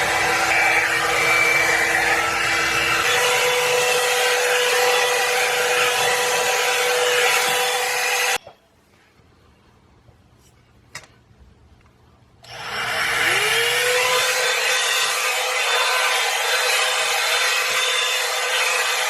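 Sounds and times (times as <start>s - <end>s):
hair dryer motor whine: 0.0s - 8.4s, 12.4s - 19.0s.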